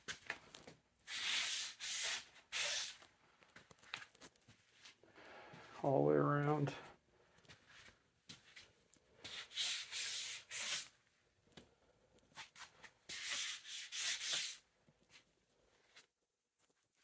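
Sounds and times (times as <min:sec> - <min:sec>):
footsteps scuffing on dusty floor: 0:03.0 - 0:05.8, 0:07.5 - 0:08.8.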